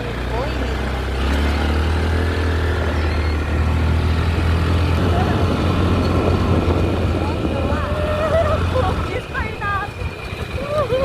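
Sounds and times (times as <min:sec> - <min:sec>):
motorcycle engine running: 0:00.0 - 0:11.0
road and wind noise: 0:00.0 - 0:11.0.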